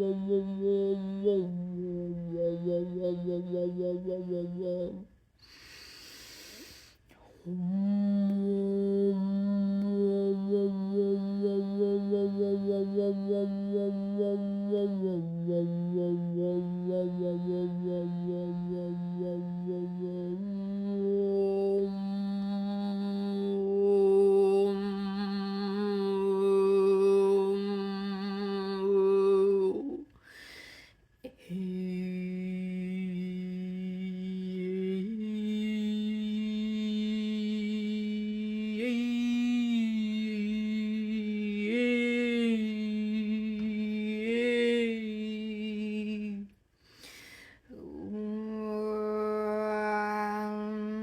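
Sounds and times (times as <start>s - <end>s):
person humming low notes: 0.0s - 5.1s, 7.4s - 30.1s, 31.4s - 46.5s, 47.7s - 51.0s
person breathing: 5.4s - 7.5s, 30.1s - 31.2s, 46.7s - 47.8s.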